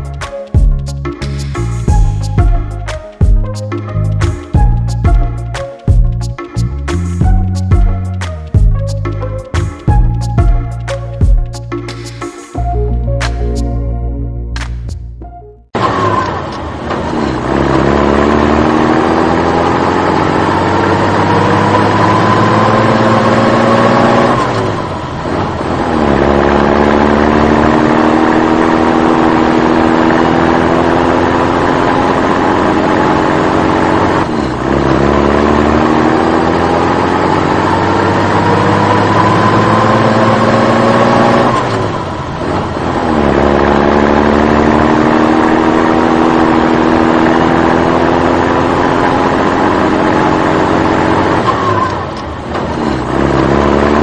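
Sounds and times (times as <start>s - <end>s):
engine revving: 15.8s - 54.0s.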